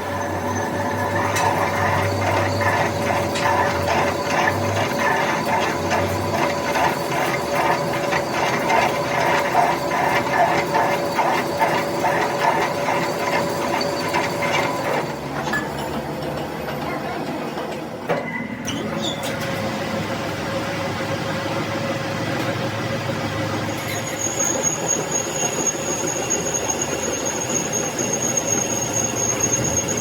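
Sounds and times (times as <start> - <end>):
workshop machine whining: 0.0 - 30.0.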